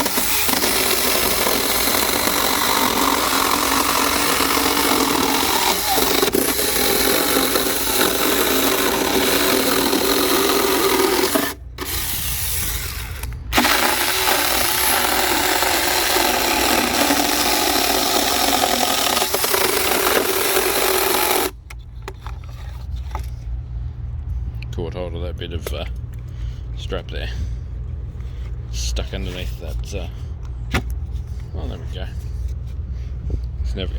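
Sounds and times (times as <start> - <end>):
mini chainsaw cutting: 0.0 - 21.6.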